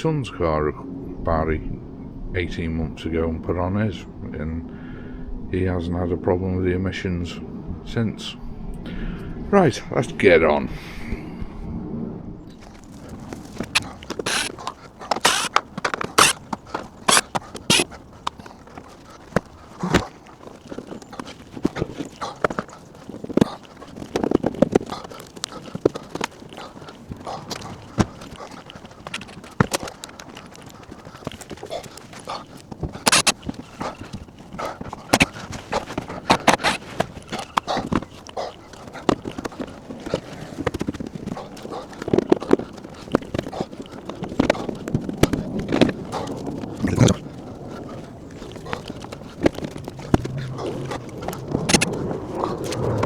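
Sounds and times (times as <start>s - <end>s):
hand tools clicking and clinking: 12.6s - 53.0s.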